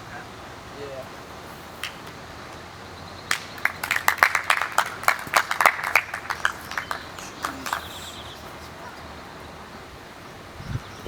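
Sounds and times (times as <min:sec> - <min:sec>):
people clapping: 0:01.8 - 0:02.7, 0:03.3 - 0:09.1.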